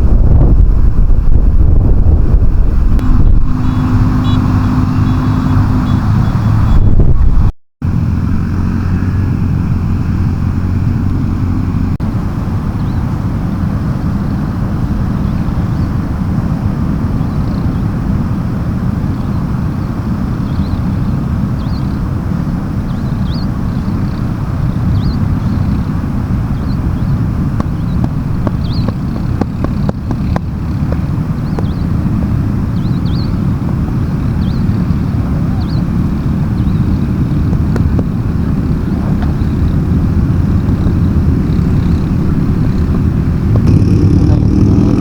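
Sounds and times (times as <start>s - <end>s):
vehicle rumble: 0.0s - 45.0s.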